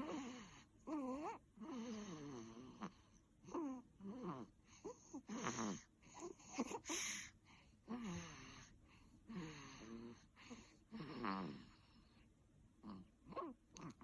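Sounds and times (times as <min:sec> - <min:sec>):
squeaky wheezing snoring: 0:00.0 - 0:07.1, 0:07.9 - 0:12.0.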